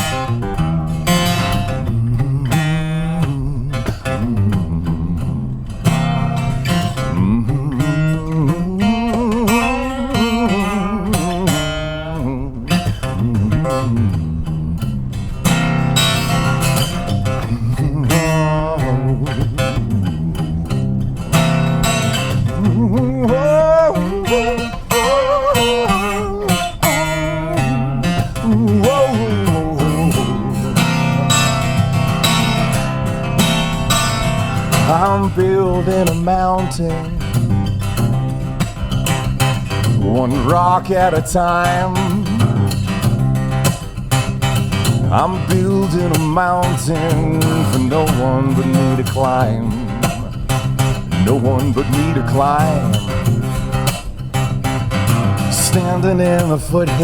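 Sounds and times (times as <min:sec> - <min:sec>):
guitar lead melody: 0:00.0 - 0:57.0
picked guitar accompaniment: 0:00.0 - 0:57.0.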